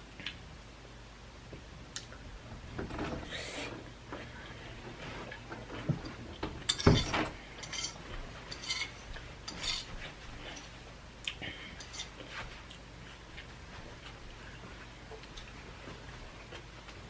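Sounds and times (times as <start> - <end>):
utensil scraping on a plate: 6.8 - 10.8, 11.8 - 12.4.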